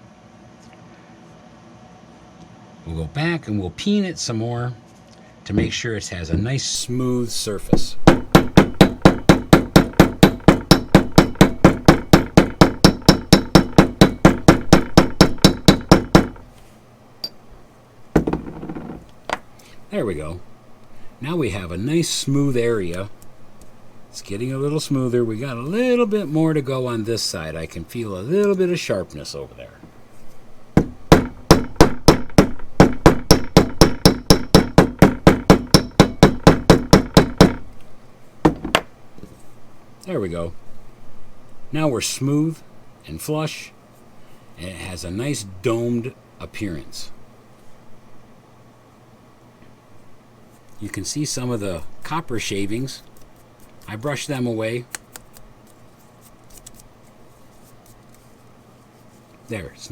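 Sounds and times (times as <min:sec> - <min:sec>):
loud knock: 0:07.7 - 0:16.4, 0:18.2 - 0:19.0, 0:30.8 - 0:37.6, 0:38.5 - 0:38.9
mallet tapping metal rivet setter: 0:08.0 - 0:16.4, 0:30.8 - 0:37.6, 0:38.5 - 0:38.9.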